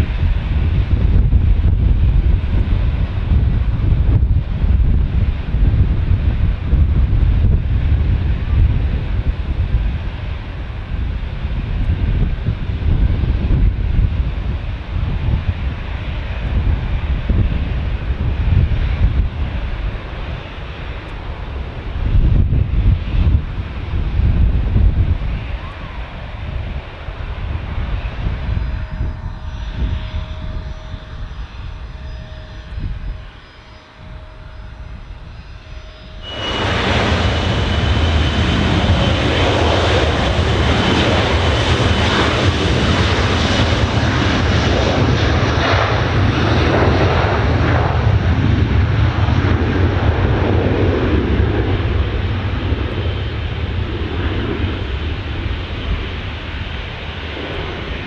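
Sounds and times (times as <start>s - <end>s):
high engine whine: 0.0s - 58.0s
jet engines at takeoff power: 0.0s - 58.0s
wind on microphone: 0.0s - 58.0s
low rumble: 35.3s - 58.0s.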